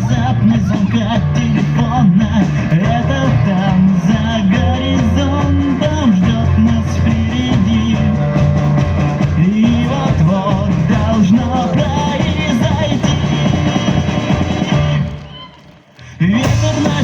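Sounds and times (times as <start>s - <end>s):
rock band playing live: 0.0s - 15.2s, 16.4s - 17.0s.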